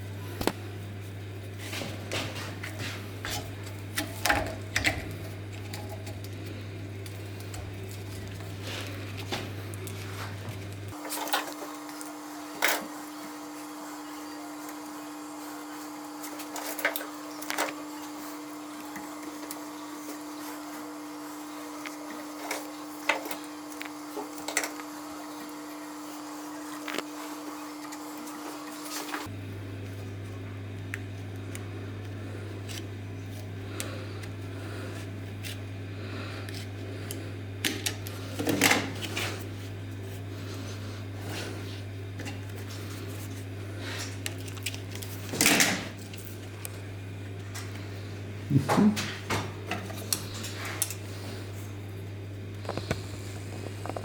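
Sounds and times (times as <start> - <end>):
steady low hum: 0.0 - 11.0, 29.2 - 54.0.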